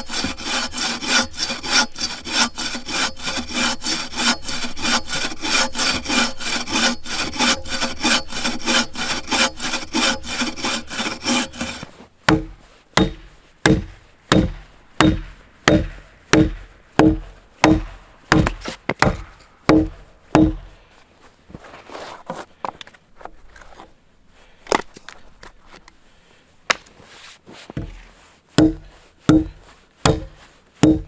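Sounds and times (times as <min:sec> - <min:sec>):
hand saw cutting log: 0:00.0 - 0:20.7, 0:28.6 - 0:31.0.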